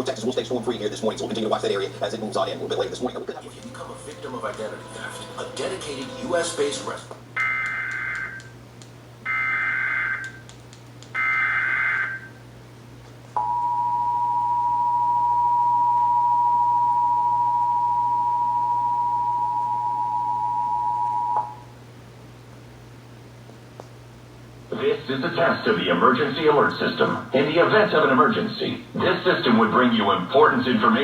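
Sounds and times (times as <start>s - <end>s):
two-tone attention signal: 13.4s - 21.6s.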